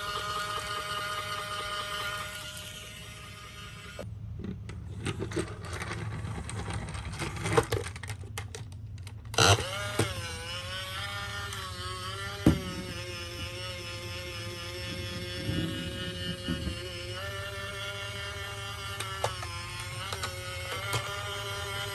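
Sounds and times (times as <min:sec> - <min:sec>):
toy electronic siren: 0:00.0 - 0:04.0
toy cars rolling and clattering: 0:04.6 - 0:13.7, 0:14.7 - 0:21.9.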